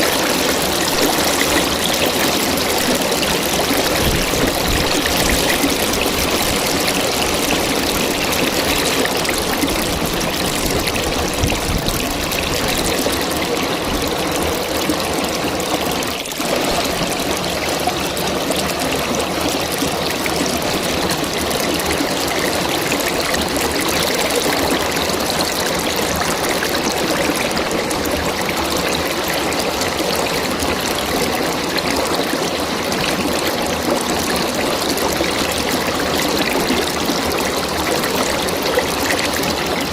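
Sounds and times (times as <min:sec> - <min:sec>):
river flowing: 0:00.0 - 0:39.9.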